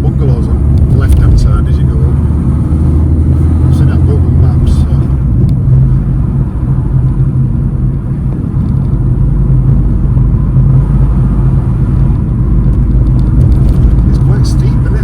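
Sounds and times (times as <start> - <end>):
car engine and tyre drone: 0.0 - 15.0.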